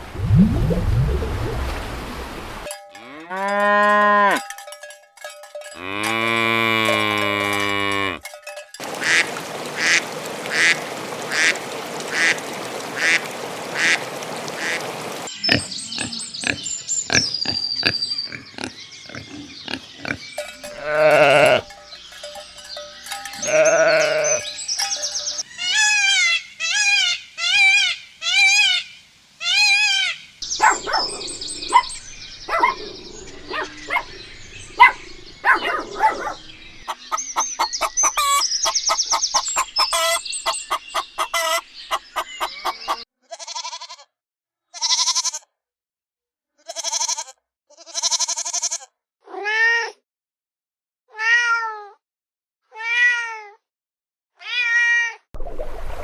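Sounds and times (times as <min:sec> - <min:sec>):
evenly spaced rings: 0:02.7 - 0:08.8, 0:20.4 - 0:25.5
bleats: 0:05.8 - 0:08.3, 0:20.6 - 0:21.7, 0:23.3 - 0:25.0, 0:36.9 - 0:43.8
drawn-out animal calls: 0:05.8 - 0:15.3, 0:19.2 - 0:32.7, 0:36.8 - 0:43.0.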